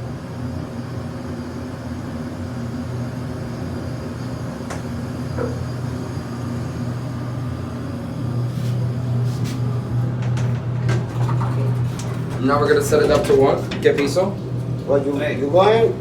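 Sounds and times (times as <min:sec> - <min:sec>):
elevator hum and rumble: 0:00.0 - 0:16.0.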